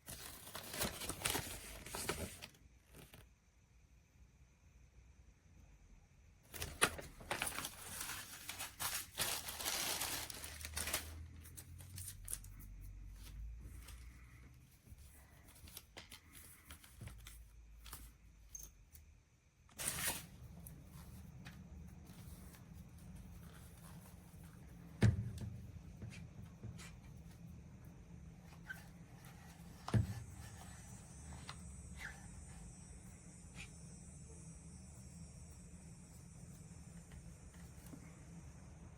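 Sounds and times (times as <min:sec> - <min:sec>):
rustling and crinkling: 0:00.0 - 0:03.3, 0:06.5 - 0:18.6, 0:19.7 - 0:32.5.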